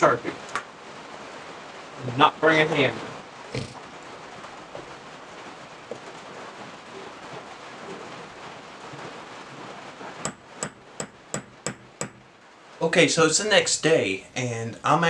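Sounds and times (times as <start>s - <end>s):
steady hiss: 0.0s - 15.0s
hammer taps on metal: 10.2s - 12.2s.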